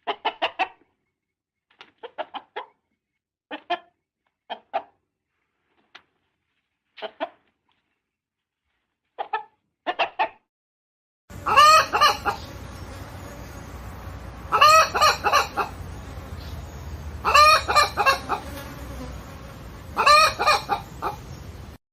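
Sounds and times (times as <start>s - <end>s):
chickens clucking: 0.0s - 1.0s, 1.8s - 2.8s, 3.5s - 3.9s, 4.5s - 5.0s, 7.0s - 7.5s, 9.2s - 10.4s, 11.3s - 21.7s
hen calls: 11.4s - 12.6s, 14.5s - 15.8s, 17.2s - 18.4s, 20.0s - 21.3s.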